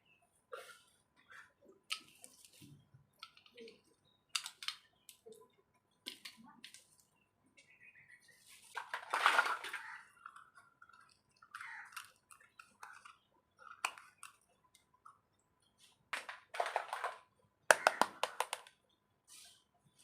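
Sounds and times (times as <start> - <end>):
toy kitchen pieces clicking: 3.2 - 5.4, 8.8 - 15.2, 16.1 - 18.8.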